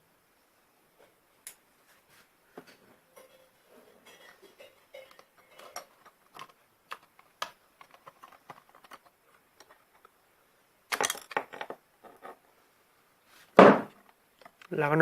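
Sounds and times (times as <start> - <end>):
plastic parts clattering: 4.1 - 10.1, 10.9 - 12.4
small plastic parts clicking: 5.1 - 10.1.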